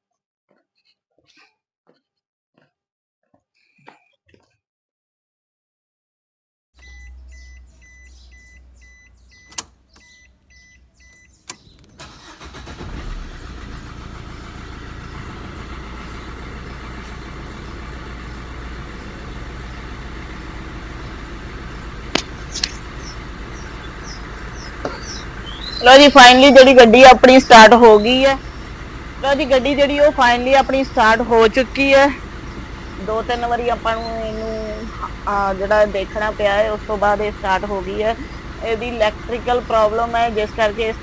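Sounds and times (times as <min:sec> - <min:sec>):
car warning beep: 0:06.8 - 0:12.4, 0:22.6 - 0:41.0
car engine starting and idling: 0:06.8 - 0:41.0
low hum: 0:13.3 - 0:41.0
sharp clicks: 0:22.1 - 0:23.2.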